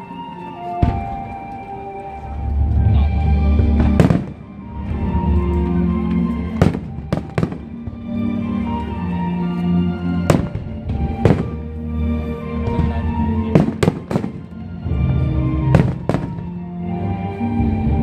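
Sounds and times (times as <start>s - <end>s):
music playing: 0.0s - 18.0s
fireworks bursting with bangs: 0.8s - 1.5s, 3.4s - 5.6s, 6.4s - 8.8s, 10.2s - 11.8s, 12.6s - 16.7s.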